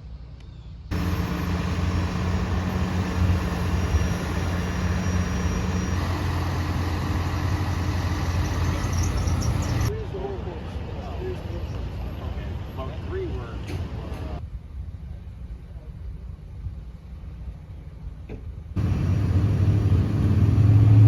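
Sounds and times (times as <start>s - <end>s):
engine idling: 0.9s - 9.9s, 18.8s - 21.0s.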